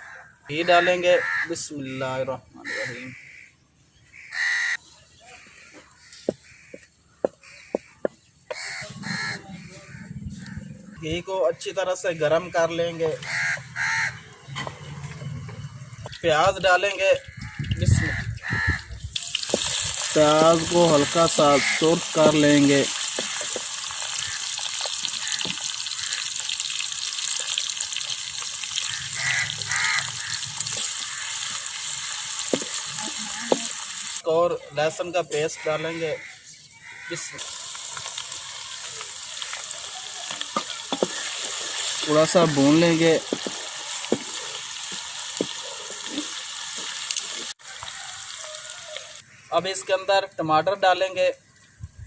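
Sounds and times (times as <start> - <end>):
onions sizzling in a pan: 19.1 - 34.3, 37.4 - 49.3.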